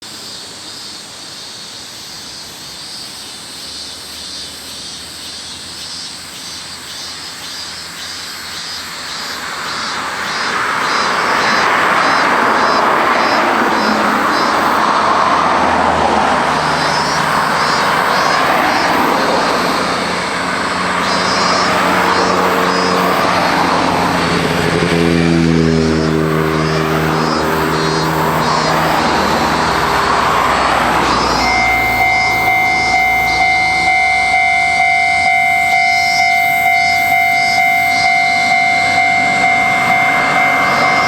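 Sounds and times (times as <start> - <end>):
road vehicles passing: 2.2 - 41.0
level crossing warning bell: 9.9 - 41.0
deep engine note: 13.7 - 41.0.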